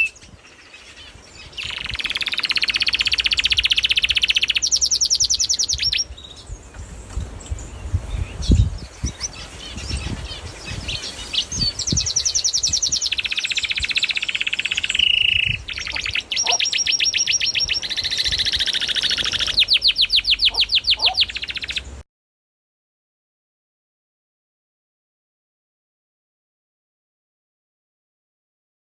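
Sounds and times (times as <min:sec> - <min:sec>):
birds chirping and trilling: 0:00.0 - 0:22.0.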